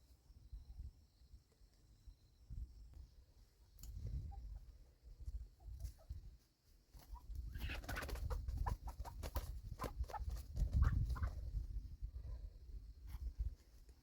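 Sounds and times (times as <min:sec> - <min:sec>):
chickens clucking: 0:05.6 - 0:06.3, 0:07.0 - 0:11.7.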